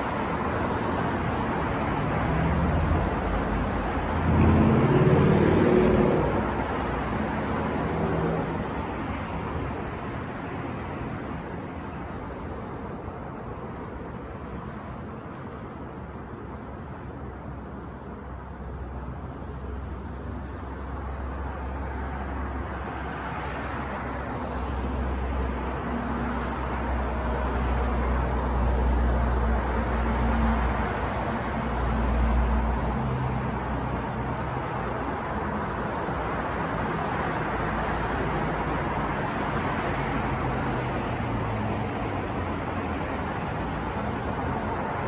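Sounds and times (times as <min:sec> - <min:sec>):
heavy vehicle engine rumble: 0:00.0 - 0:21.4
road traffic noise: 0:00.0 - 0:45.0.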